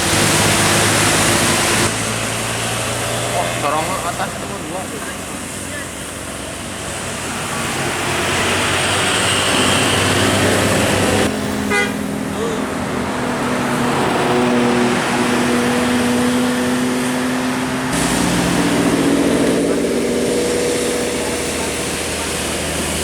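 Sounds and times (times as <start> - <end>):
bus passing: 0.0 - 23.0
traffic noise: 0.0 - 23.0
air horn notes: 11.6 - 12.0.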